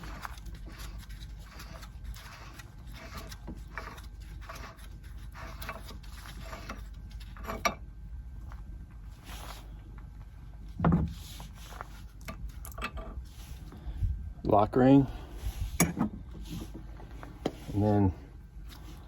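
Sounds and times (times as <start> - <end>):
metal scraping and rubbing: 0.0 - 7.8
steady low rumble: 7.9 - 19.0.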